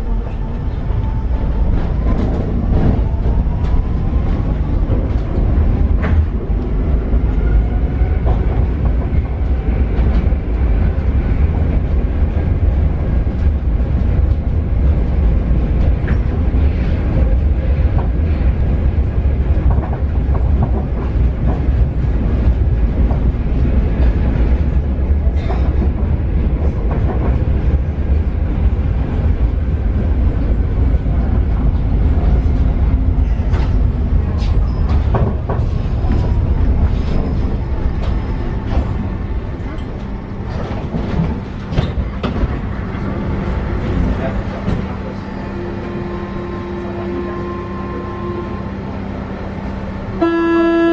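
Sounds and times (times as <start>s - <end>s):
train wheels rumbling on rails: 0.0s - 50.9s
clicks and clacks: 4.9s - 6.7s, 19.5s - 24.6s.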